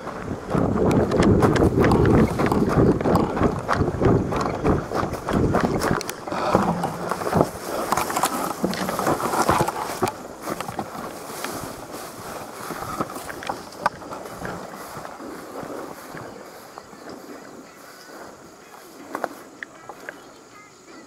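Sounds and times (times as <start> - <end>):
footsteps rustling through brush: 0.0 - 20.4.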